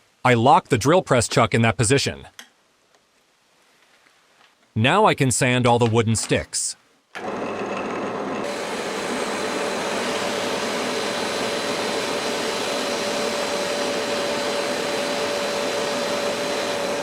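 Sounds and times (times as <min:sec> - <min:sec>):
drill press motor whine: 0:07.2 - 0:17.0
sanding hiss: 0:08.5 - 0:17.0.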